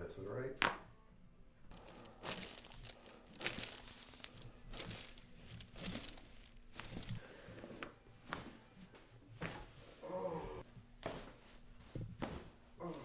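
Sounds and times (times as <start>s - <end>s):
rustling and crinkling on table: 1.7s - 7.2s.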